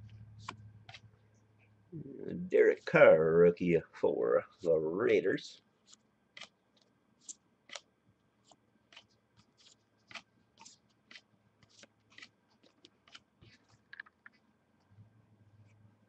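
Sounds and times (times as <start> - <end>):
cards being flipped through: 0.4 - 1.1, 5.9 - 7.9, 8.9 - 14.4.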